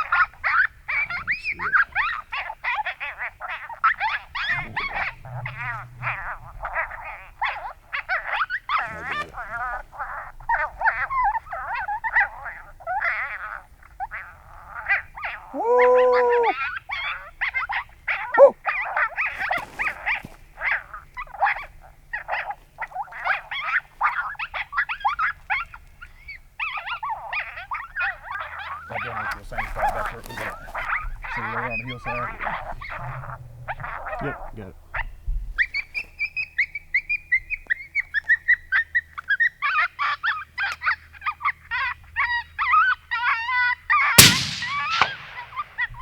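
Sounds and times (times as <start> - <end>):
electronic coyote-like yips: 0.0 - 12.3, 14.9 - 17.1, 18.3 - 18.6, 44.2 - 45.8.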